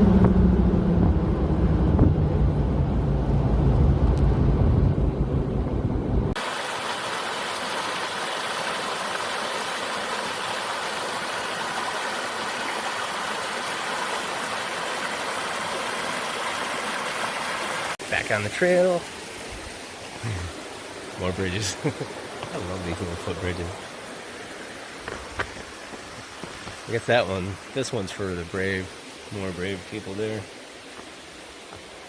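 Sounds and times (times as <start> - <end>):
car engine and road rumble: 0.0 - 6.4
stream rushing: 6.3 - 32.0.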